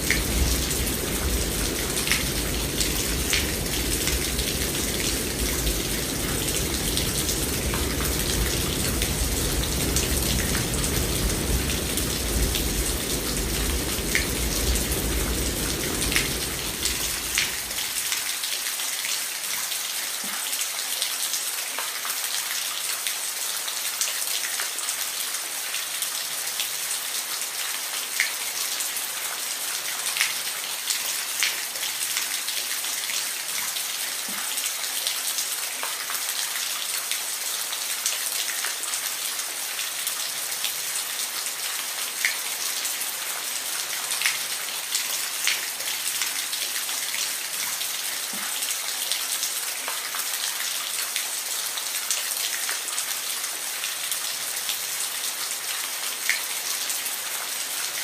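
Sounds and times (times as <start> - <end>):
heavy rain hiss: 0.0 - 19.8, 28.4 - 58.0.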